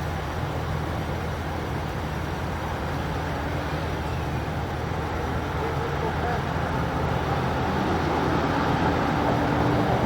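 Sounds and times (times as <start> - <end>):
road traffic rumble: 0.0 - 10.0.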